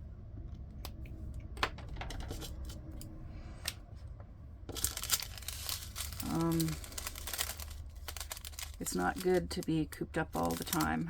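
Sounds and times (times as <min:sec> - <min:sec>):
beads poured rattling: 0:04.7 - 0:09.7.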